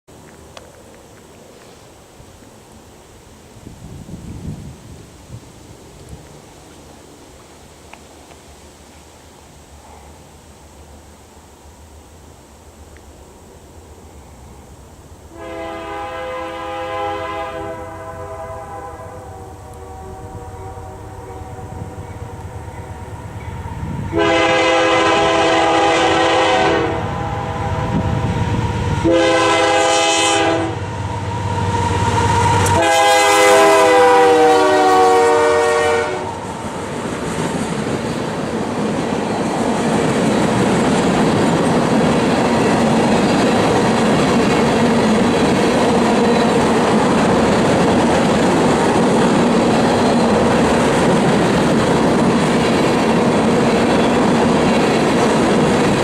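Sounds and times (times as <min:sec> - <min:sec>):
train cars rolling on rails: 0:00.1 - 0:56.0
locomotive air horn blasts: 0:15.3 - 0:28.3, 0:29.0 - 0:36.4.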